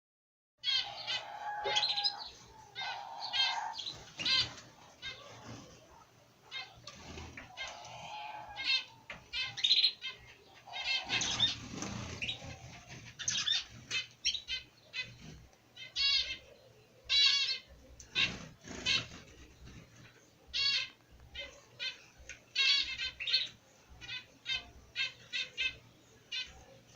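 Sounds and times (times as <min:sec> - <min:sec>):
small birds chirping: 0:00.6 - 0:26.9
wings fluttering: 0:06.8 - 0:07.8, 0:10.9 - 0:14.1, 0:18.1 - 0:20.1.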